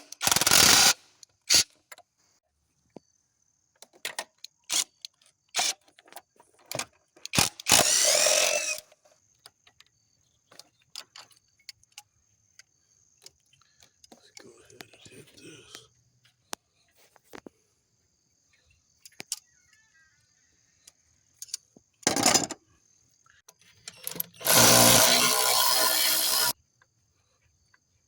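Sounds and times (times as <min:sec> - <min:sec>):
loud noisy bursts: 0:24.4 - 0:26.5.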